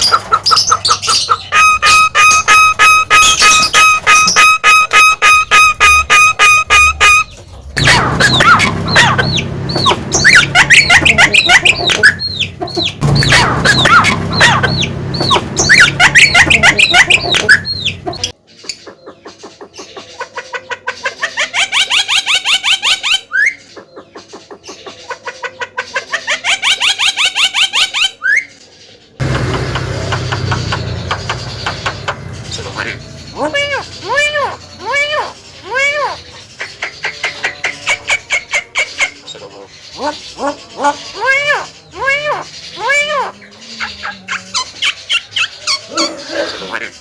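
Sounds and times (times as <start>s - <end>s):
bird chattering whistles: 0.0s - 18.3s.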